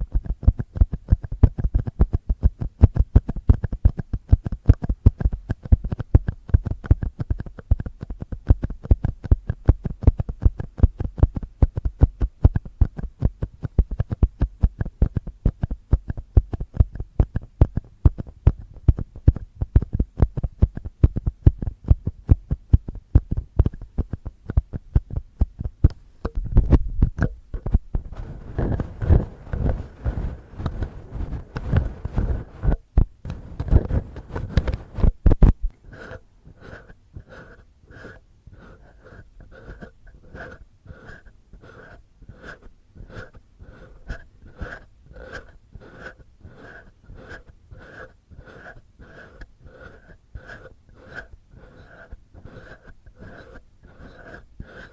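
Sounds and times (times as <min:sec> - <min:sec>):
fingernails scratching microphone: 0:09.8 - 0:54.9.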